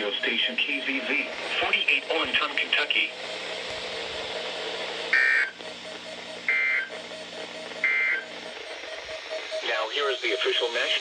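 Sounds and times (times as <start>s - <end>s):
radio hiss: 0.0s - 11.0s
warbling data tone bursts: 7.8s - 11.0s.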